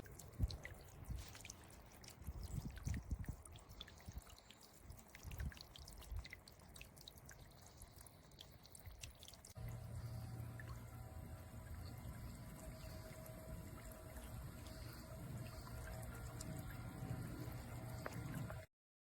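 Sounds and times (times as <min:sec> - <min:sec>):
water dripping and splashing: 0:00.0 - 0:18.7
low hum: 0:09.5 - 0:18.7.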